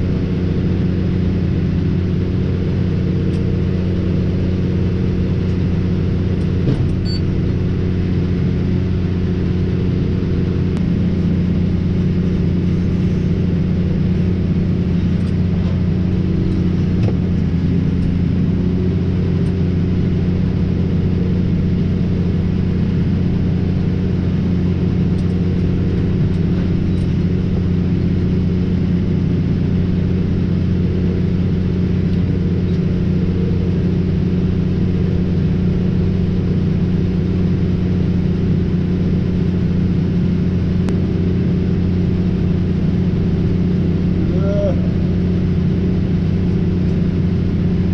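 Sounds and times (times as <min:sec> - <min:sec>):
tractor engine running: 0:00.0 - 0:47.9.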